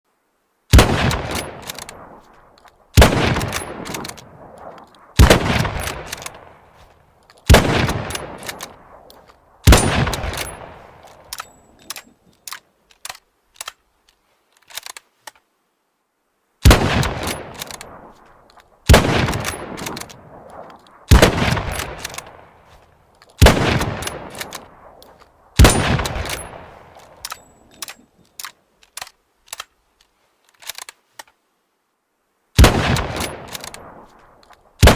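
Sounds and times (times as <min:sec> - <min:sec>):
rifle shots: 0:00.7 - 0:06.8, 0:07.5 - 0:12.0, 0:16.6 - 0:18.2, 0:18.8 - 0:22.6, 0:23.4 - 0:27.5, 0:32.6 - 0:34.9
short metallic clicks: 0:07.2 - 0:15.5, 0:23.1 - 0:31.4, 0:33.2 - 0:34.7.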